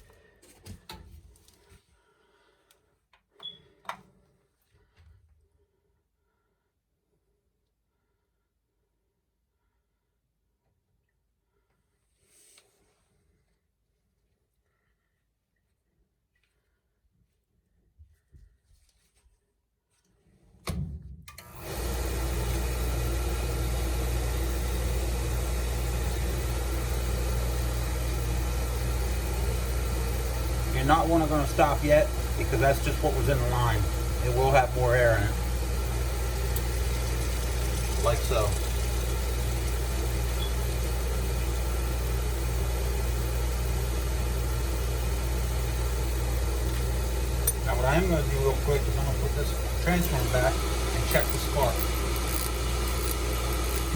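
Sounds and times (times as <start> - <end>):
oil burner motor humming: 21.4 - 53.9.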